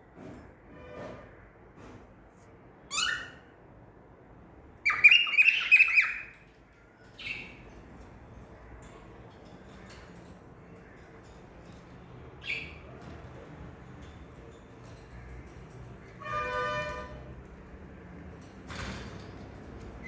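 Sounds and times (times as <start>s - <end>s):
cockatiel calling and squawking: 2.9s - 3.5s, 4.8s - 6.3s.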